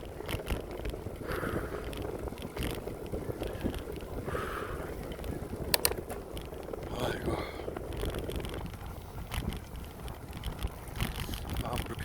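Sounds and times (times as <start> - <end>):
bicycle rolling on pavement: 0.0 - 12.0
wind noise on microphone: 0.0 - 12.0
sharp clicks: 5.7 - 6.2.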